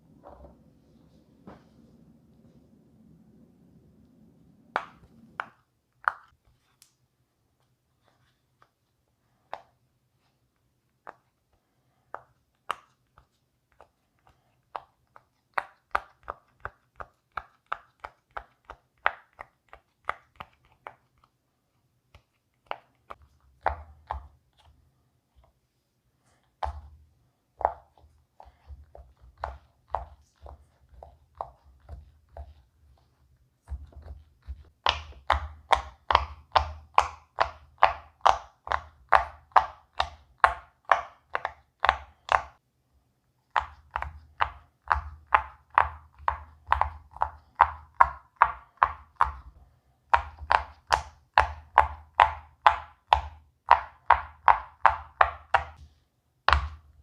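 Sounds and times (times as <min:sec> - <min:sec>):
pop-it toy bubbles popping: 0:34.7 - 0:42.6, 0:50.1 - 0:55.8.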